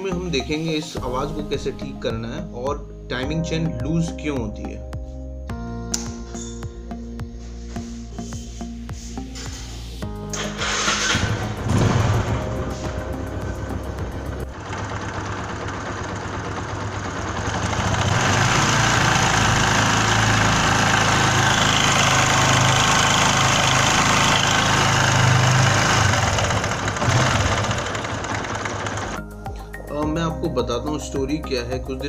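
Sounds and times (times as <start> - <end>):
motorcycle engine revving: 10.2 - 29.2.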